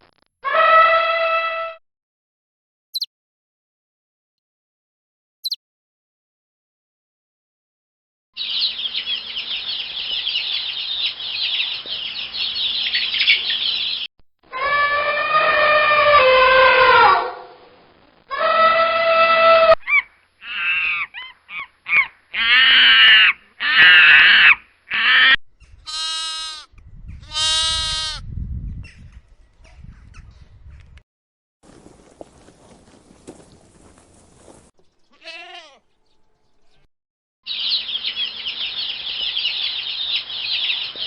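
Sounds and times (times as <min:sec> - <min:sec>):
loud honking fowl calls: 0:14.5 - 0:17.6.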